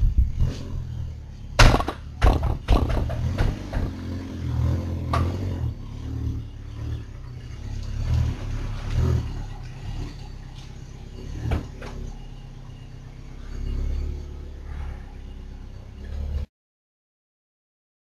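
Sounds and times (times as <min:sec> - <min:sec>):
car driveline low rumble: 0:00.0 - 0:16.5
driveline clunks: 0:06.7 - 0:16.4.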